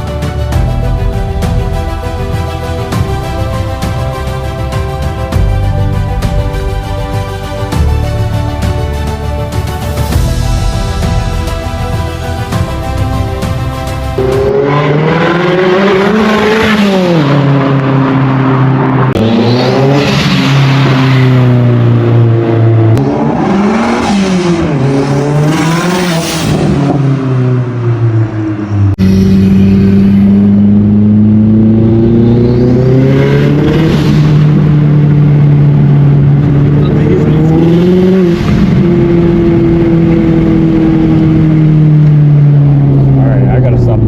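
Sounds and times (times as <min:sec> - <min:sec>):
car engine revving: 0:10.7 - 0:44.0.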